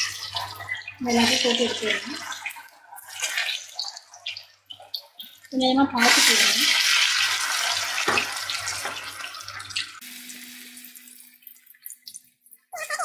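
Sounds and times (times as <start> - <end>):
food sizzling in frying oil: 0.0 - 13.0.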